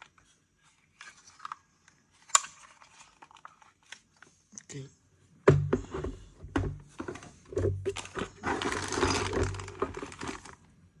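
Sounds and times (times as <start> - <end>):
rustling: 6.9 - 10.7.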